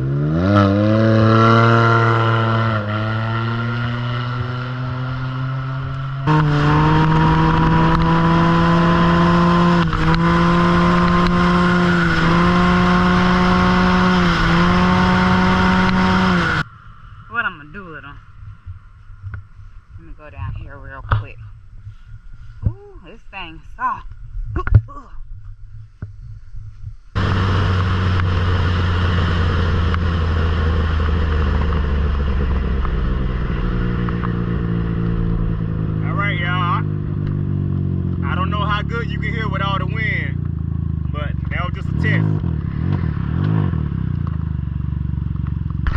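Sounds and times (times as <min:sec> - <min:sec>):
motorcycle engine at high revs: 0:00.0 - 0:16.7, 0:27.2 - 0:45.9
wind noise on microphone: 0:18.0 - 0:30.5.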